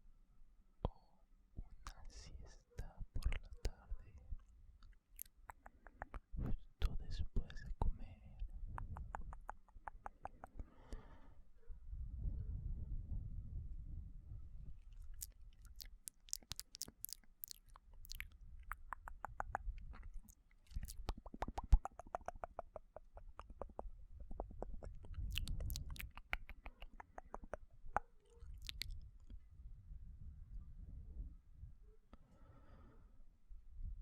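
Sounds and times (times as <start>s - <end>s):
wet mouth clicks and smacks: 1.9s - 2.1s, 2.8s - 3.8s, 4.8s - 11.0s, 14.8s - 29.4s.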